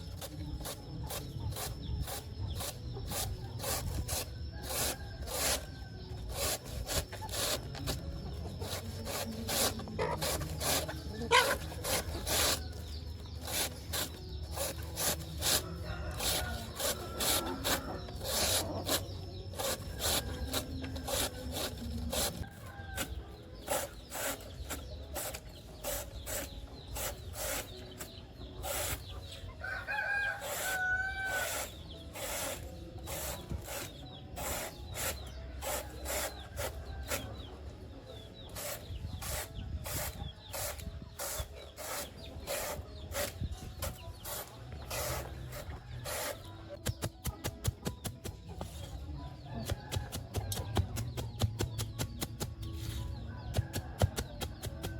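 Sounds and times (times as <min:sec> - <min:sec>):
blade chopping banana stems: 0:06.3 - 0:29.0, 0:49.6 - 0:52.7
chickens clucking: 0:07.0 - 0:13.4
rooster crowing: 0:29.6 - 0:31.5.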